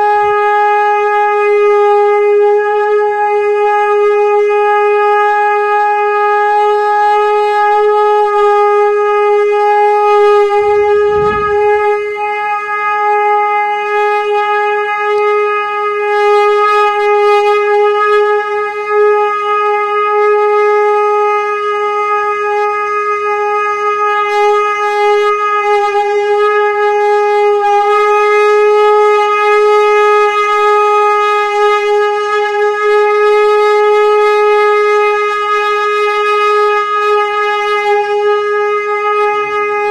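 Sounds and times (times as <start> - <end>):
conch shell blown: 0.0 - 39.9
low rumble: 10.3 - 12.6.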